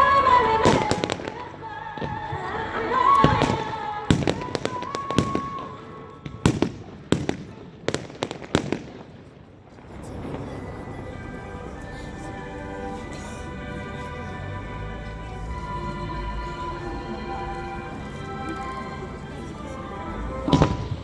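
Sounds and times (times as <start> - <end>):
show music with sung melody: 0.0 - 8.2, 10.2 - 21.0
fireworks bursting in sharp bangs: 0.6 - 2.5, 3.1 - 11.0, 20.5 - 21.0.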